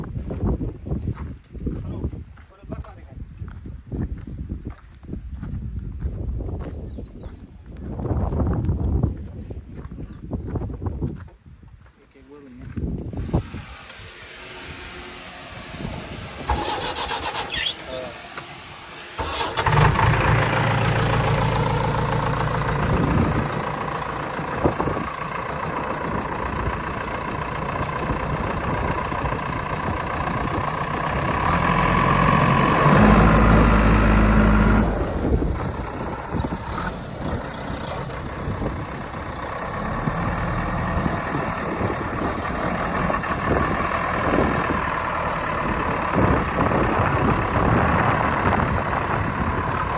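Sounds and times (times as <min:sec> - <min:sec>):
backhoe diesel engine working: 0:13.2 - 0:49.9.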